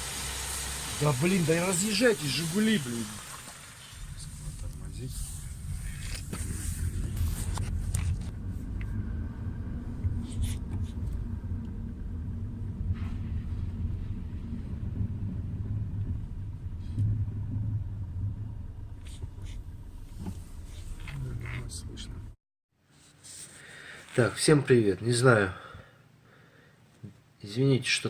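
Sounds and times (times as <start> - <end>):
car driving rumble inside cabin: 4.0 - 22.4.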